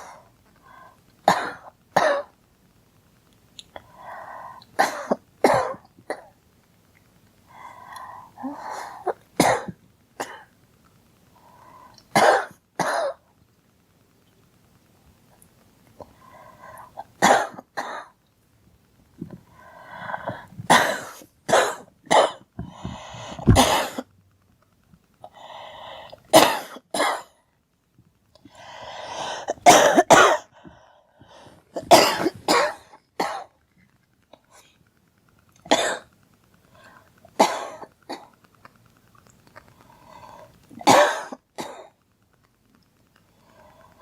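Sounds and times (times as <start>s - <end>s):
girl coughing: 23.4s - 24.0s, 29.5s - 30.5s, 31.8s - 33.5s, 40.8s - 41.8s.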